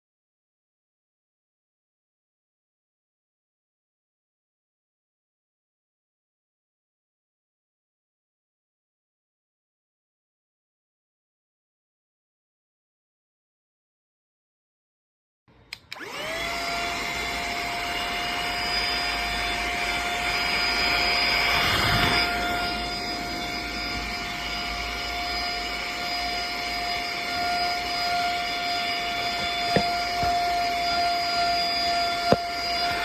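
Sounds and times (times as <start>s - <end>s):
sharp clicks: 15.7s - 16.1s
handheld vacuum cleaner whining: 15.7s - 33.0s.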